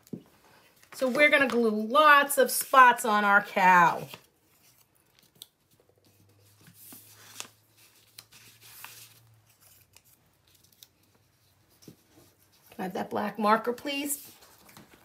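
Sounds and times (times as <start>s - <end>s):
paper rustling: 0.0s - 2.8s, 3.5s - 12.8s, 14.1s - 15.0s.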